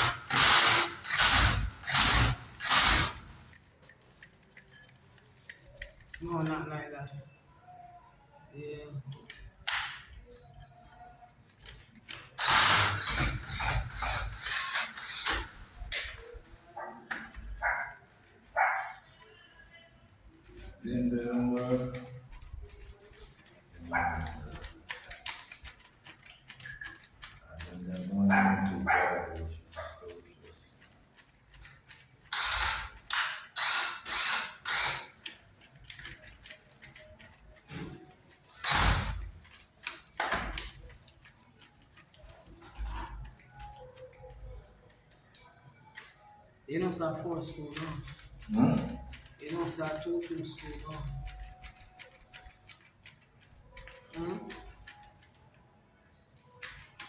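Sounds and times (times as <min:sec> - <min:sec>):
ratchet clicking: 0:00.0 - 0:06.6, 0:11.6 - 0:16.4, 0:20.5 - 0:46.2
hand tool rasping: 0:31.6 - 0:35.3.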